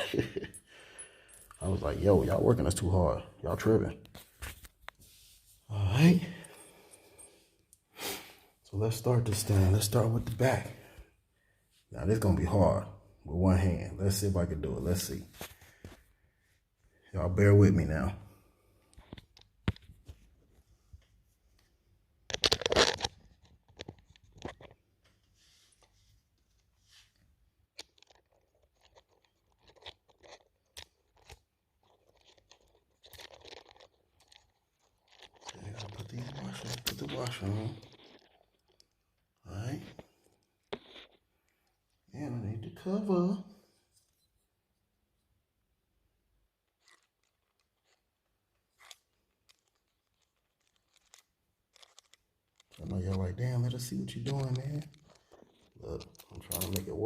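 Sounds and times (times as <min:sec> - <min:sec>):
small parts clicking and scraping: 0:22.3 - 0:42.0, 0:46.6 - 0:57.0.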